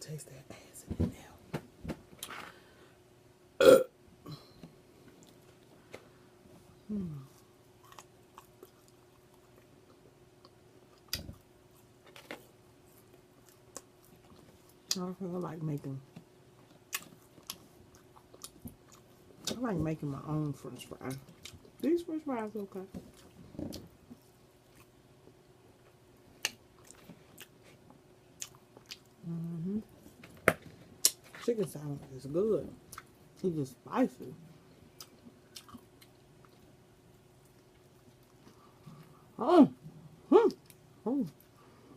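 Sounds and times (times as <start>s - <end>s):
close-up chewing: 7.4s - 12.2s, 12.8s - 15.0s, 16.2s - 19.6s, 26.4s - 29.5s, 34.9s - 39.2s.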